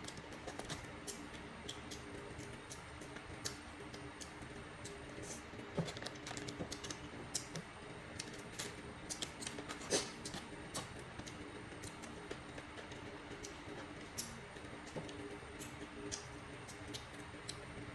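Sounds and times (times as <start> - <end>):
small clicks and crackles: 0.0 - 17.9
steady low hum: 0.0 - 17.9.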